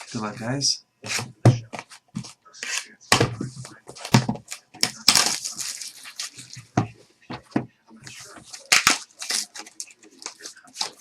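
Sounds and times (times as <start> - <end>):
card wrappers rustling and crinkling: 3.9 - 6.8, 8.1 - 11.0
wrapper tearing: 5.0 - 6.6, 8.6 - 11.0.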